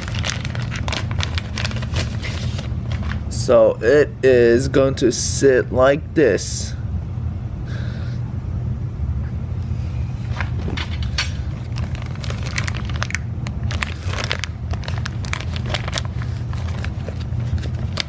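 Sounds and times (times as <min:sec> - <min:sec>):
plastic crinkling and crackling: 0:00.0 - 0:03.2, 0:11.6 - 0:18.0
steady low hum: 0:00.0 - 0:18.0.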